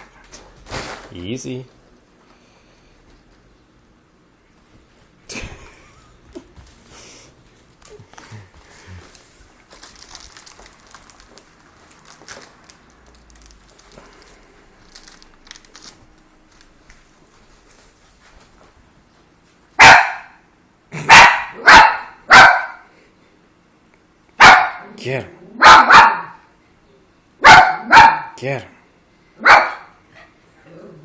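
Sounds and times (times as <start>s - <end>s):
dog barking: 19.8s - 20.4s, 21.0s - 22.9s, 24.4s - 25.0s, 25.6s - 26.5s, 27.4s - 28.4s, 29.4s - 30.0s.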